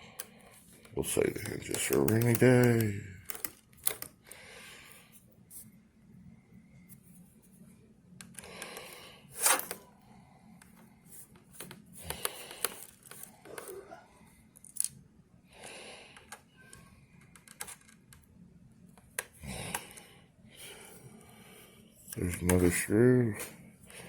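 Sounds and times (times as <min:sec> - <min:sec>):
clicks and scrapes on laptop: 0:10.6 - 0:14.0, 0:16.2 - 0:18.2.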